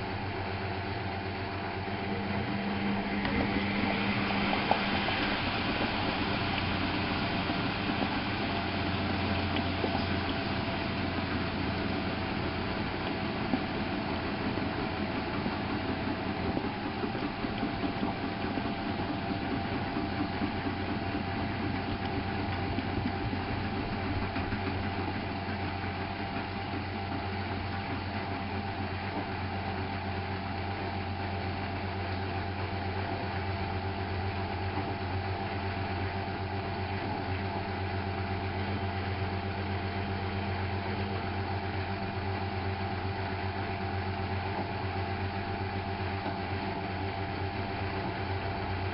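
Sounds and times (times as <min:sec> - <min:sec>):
thin steady whine: 0:00.0 - 0:48.9
washing machine motor hum: 0:00.0 - 0:48.9.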